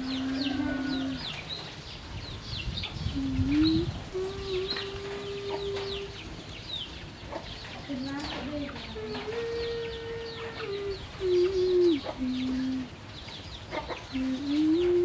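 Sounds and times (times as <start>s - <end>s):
longer lower chicken calls: 0.0s - 1.4s
chicks peeping: 2.6s - 15.0s.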